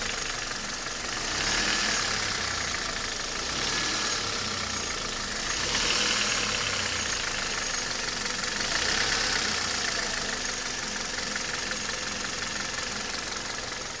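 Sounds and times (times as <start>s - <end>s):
car engine running: 0.0s - 14.0s
engine knocking tick: 0.0s - 14.0s.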